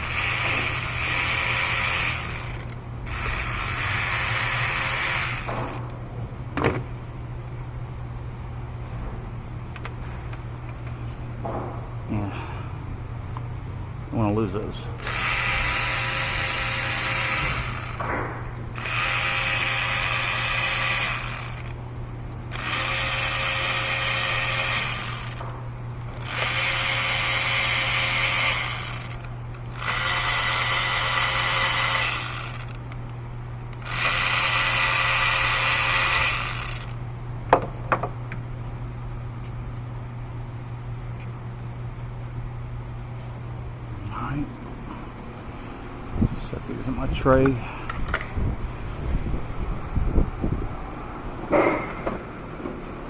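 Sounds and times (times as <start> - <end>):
electric ratchet whirring: 0.0 - 6.0, 15.0 - 37.0.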